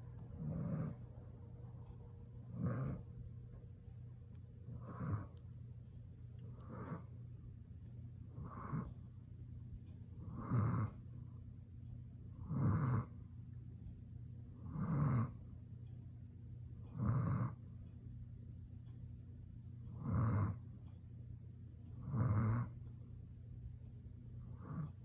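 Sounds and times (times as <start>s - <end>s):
person snoring: 0.4s - 1.0s, 2.5s - 3.0s, 4.7s - 5.3s, 10.2s - 11.0s, 12.4s - 13.1s, 19.9s - 20.6s, 22.0s - 22.7s.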